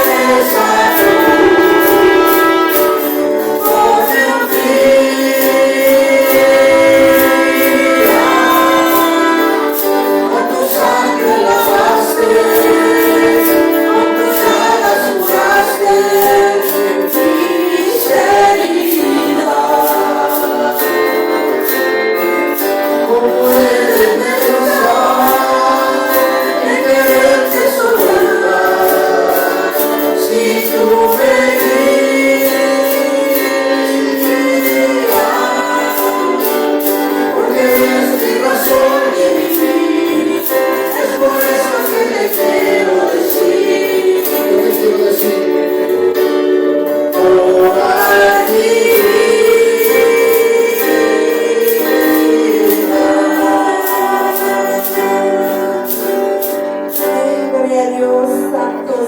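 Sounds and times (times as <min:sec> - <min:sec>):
steady percussion beat: 0:00.0 - 0:13.9
group singing worship song: 0:00.0 - 0:59.0
instrumental backing: 0:00.0 - 0:59.0.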